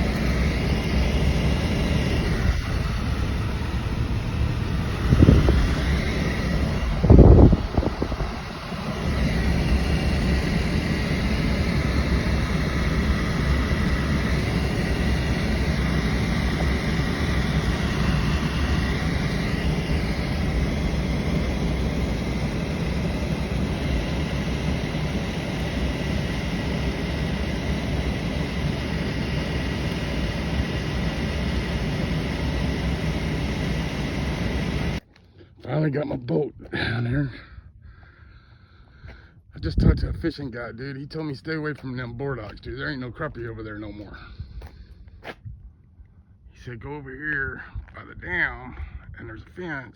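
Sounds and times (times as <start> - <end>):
rushing wind noise: 0.0 - 35.0, 39.6 - 40.3
vehicle engine rumbling: 0.0 - 48.3.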